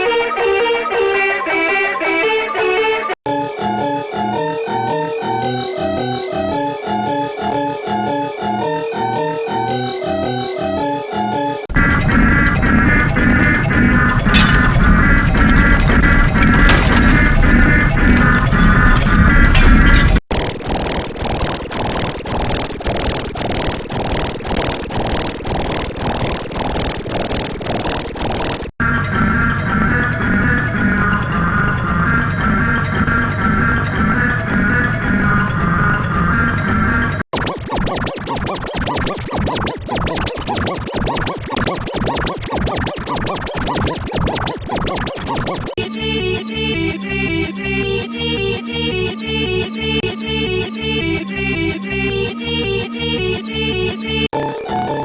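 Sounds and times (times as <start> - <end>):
melodic electronic section: 3.3 - 11.7, 37.4 - 45.8, 54.4 - 55.0
distorted remix music: 3.3 - 28.7, 37.3 - 45.8, 54.4 - 55.0.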